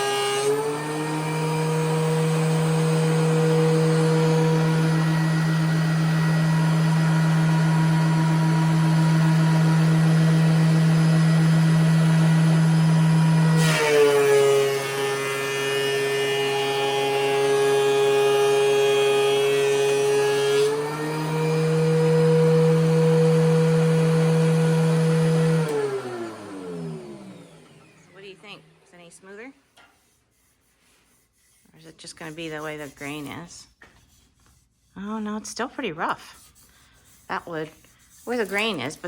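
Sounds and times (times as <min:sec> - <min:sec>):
planer knives cutting wood: 0:00.0 - 0:26.7, 0:29.8 - 0:35.4, 0:36.2 - 0:39.0
thickness planer humming: 0:00.0 - 0:28.9, 0:37.1 - 0:39.0.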